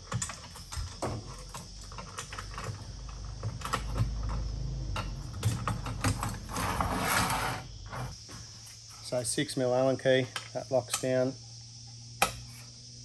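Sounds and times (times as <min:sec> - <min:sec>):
small metal clicks and knocks: 0:00.0 - 0:06.5, 0:10.2 - 0:11.2.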